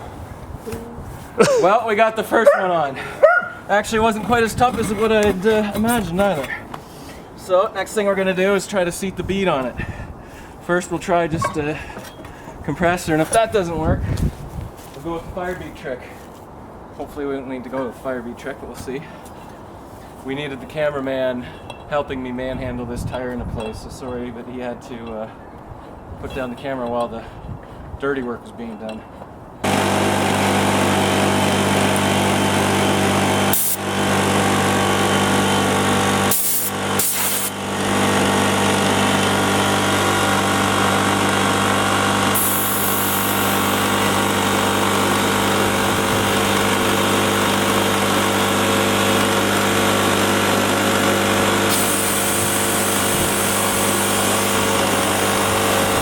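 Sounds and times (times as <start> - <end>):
air compressor running: 29.6 - 56.0.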